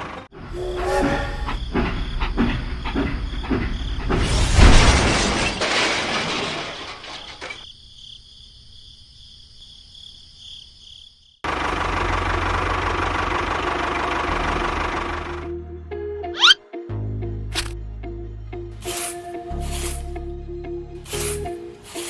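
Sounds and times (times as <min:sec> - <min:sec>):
loud hiss: 0:18.8 - 0:20.1, 0:21.1 - 0:22.0.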